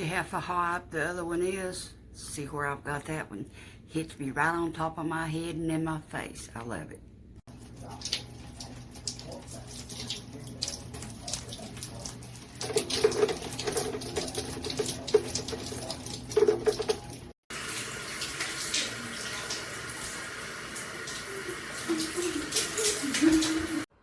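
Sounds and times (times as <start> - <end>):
shower head spraying water: 7.6 - 23.9.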